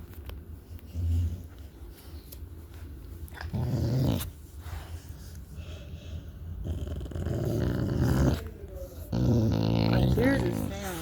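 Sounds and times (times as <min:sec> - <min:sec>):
dog growling: 0:03.4 - 0:04.4, 0:06.4 - 0:11.0.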